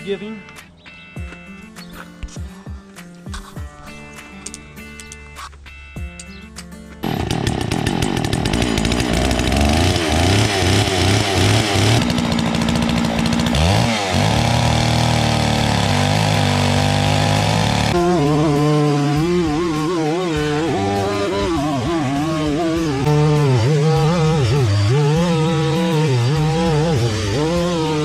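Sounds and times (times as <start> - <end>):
chainsaw ripping a log: 7.0 - 28.0.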